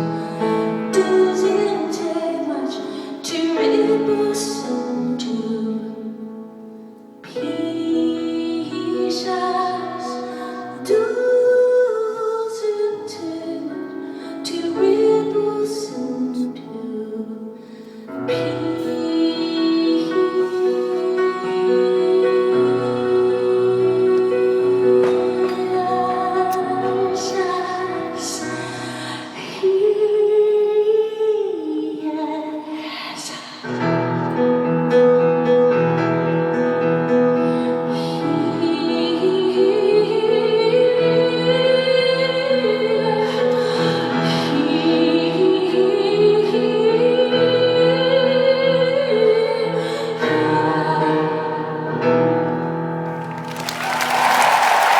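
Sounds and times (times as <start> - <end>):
piano accompaniment: 0.0 - 32.0, 33.7 - 54.9
woman singing: 0.0 - 34.4, 37.3 - 52.6.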